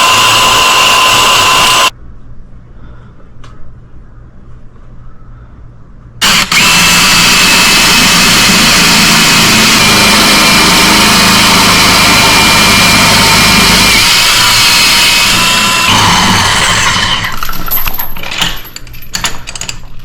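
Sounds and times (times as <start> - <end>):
power tool motor whining: 0.0 - 1.9, 6.2 - 17.3.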